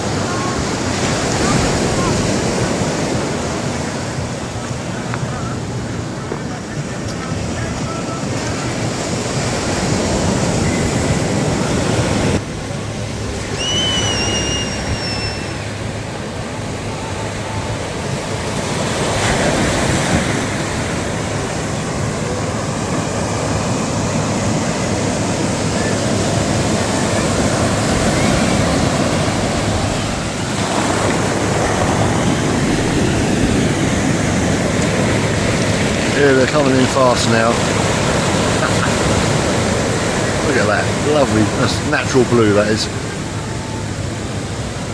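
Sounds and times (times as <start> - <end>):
sea surf breaking: 0.0 - 44.9
short high whistle: 13.4 - 15.8.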